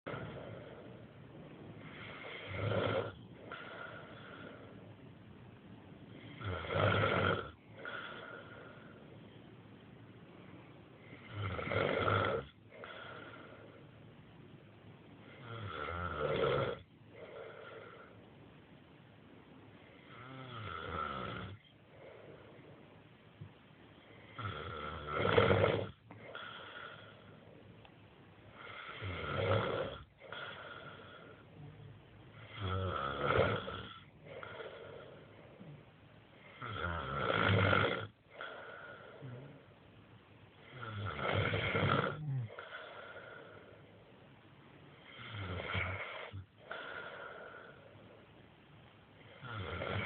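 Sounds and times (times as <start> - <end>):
soft breathing: 0.1 - 5.2, 7.6 - 11.4, 12.6 - 14.2, 17.1 - 18.5, 21.6 - 24.5, 26.0 - 29.2, 30.1 - 32.6, 33.8 - 36.7, 38.2 - 40.7, 42.1 - 44.4, 45.9 - 49.5
man snoring: 1.8 - 4.7, 6.2 - 8.8, 11.1 - 13.6, 15.3 - 18.1, 20.0 - 21.6, 24.2 - 27.3, 28.6 - 31.8, 32.4 - 35.7, 36.4 - 39.6, 40.6 - 43.7, 45.0 - 47.8, 49.3 - 50.0.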